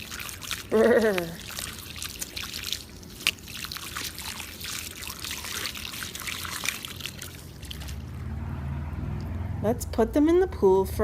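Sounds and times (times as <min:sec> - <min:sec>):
hose water splashing on plastic toys: 0:00.0 - 0:08.2.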